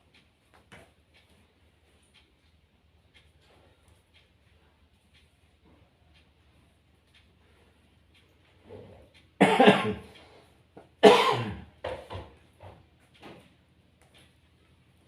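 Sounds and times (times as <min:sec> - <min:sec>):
person coughing: 0:09.4 - 0:10.2, 0:11.0 - 0:11.7.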